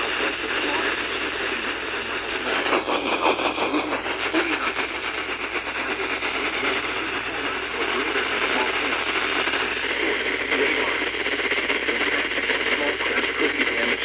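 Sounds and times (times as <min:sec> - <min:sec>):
faint indistinct radio audio: 0:00.0 - 0:14.0
radio static hiss: 0:00.0 - 0:14.0.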